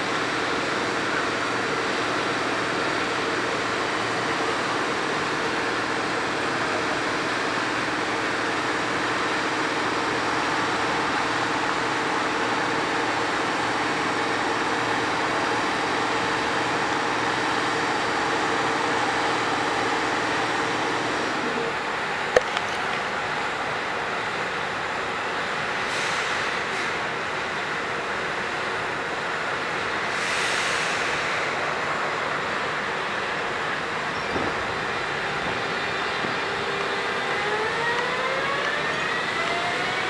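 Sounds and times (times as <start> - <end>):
train wheels rolling on rail: 0.0 - 40.0.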